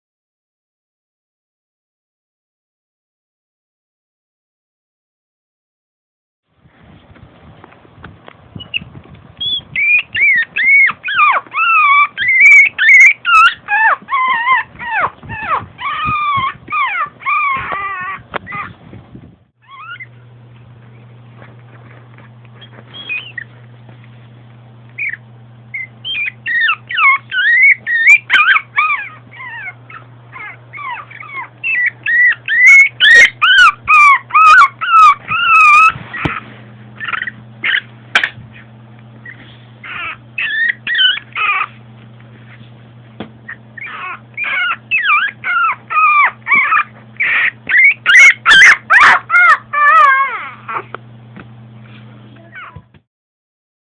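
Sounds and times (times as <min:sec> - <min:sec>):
dog whining: 0:08.6 - 0:18.9, 0:19.6 - 0:20.2, 0:22.5 - 0:23.6, 0:25.0 - 0:37.9, 0:38.5 - 0:42.0, 0:43.4 - 0:51.0, 0:52.4 - 0:52.9.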